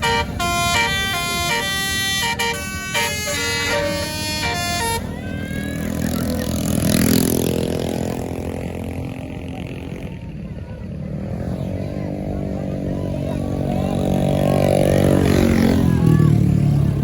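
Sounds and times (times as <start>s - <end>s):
musical air horn playing a tune: 0.0s - 5.2s
bus engine passing: 0.0s - 17.0s.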